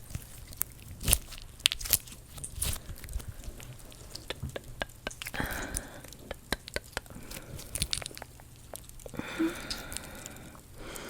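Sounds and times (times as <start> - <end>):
squishy toys peeling apart: 0.0 - 4.4, 5.1 - 6.2, 7.1 - 10.4.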